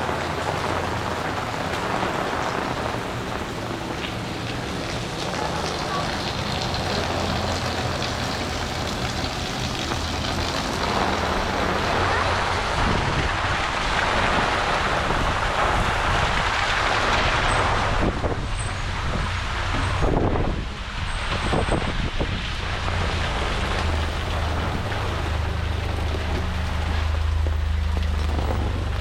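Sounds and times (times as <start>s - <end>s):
tyres hissing on wet pavement: 0.0s - 29.0s
vehicle engine low hum: 0.0s - 29.0s.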